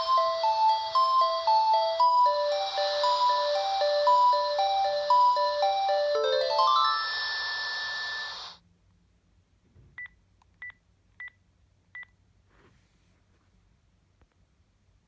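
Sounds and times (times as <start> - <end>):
phone ringtone: 0.0 - 8.6.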